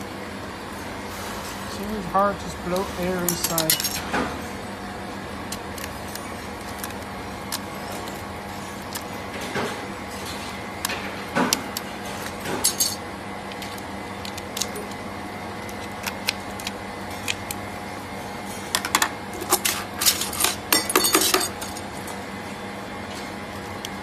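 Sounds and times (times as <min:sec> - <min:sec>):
steady machine hum: 0:00.0 - 0:24.0
pry tools clicking and scraping: 0:02.7 - 0:04.2.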